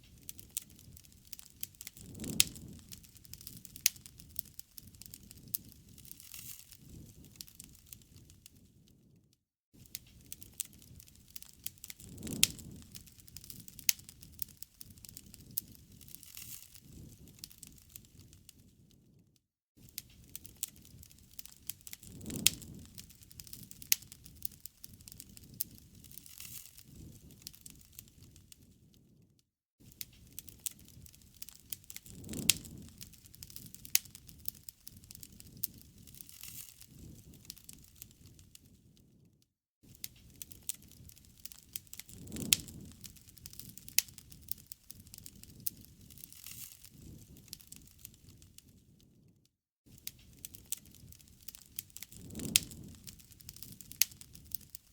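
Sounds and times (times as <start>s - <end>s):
wood fire crackling and popping: 0.0s - 9.2s, 9.8s - 19.2s, 19.8s - 29.2s, 29.8s - 49.2s, 49.9s - 54.9s
low rumble of flame: 0.0s - 54.9s.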